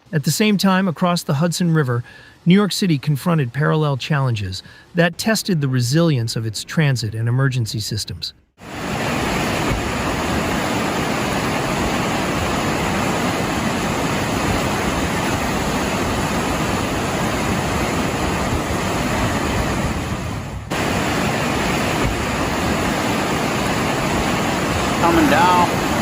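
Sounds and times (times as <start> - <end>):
heavy rain pouring: 8.6 - 26.0.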